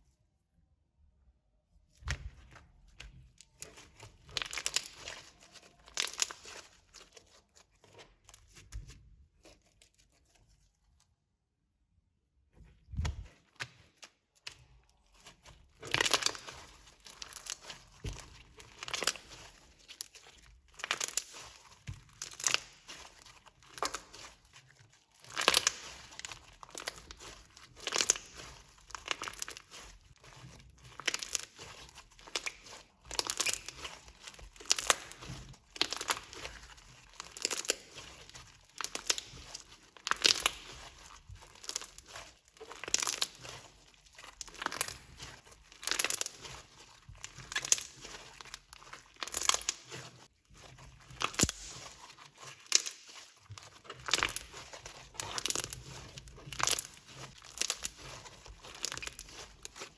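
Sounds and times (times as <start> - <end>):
slime sticky crackling: 2.0 - 10.4, 12.9 - 59.9.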